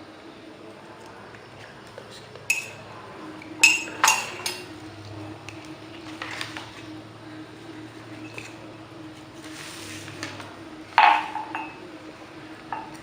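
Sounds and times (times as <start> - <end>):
metal spoon clinking on glass: 2.5 - 2.8, 3.6 - 4.7, 11.0 - 11.8.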